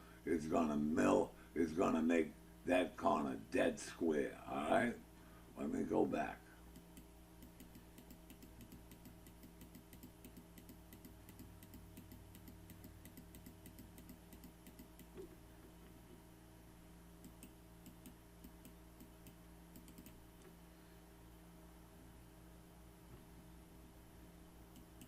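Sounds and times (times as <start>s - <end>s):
low steady hum: 0.0s - 25.0s
mouse and keyboard clicks: 6.8s - 15.3s.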